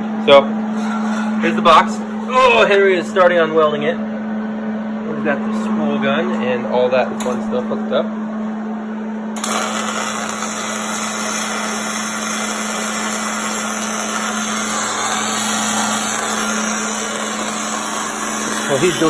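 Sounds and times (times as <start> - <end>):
low hum: 0.5 - 6.0
welding arc crackling hiss: 9.4 - 19.0.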